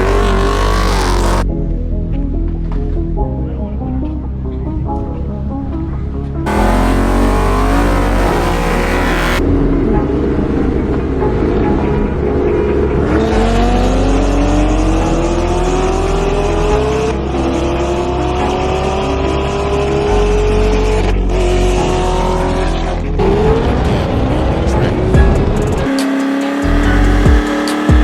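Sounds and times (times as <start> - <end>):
car engine accelerating: 0.0 - 1.4, 6.4 - 9.6, 10.5 - 28.0
trap beat with deep bass: 25.2 - 28.0.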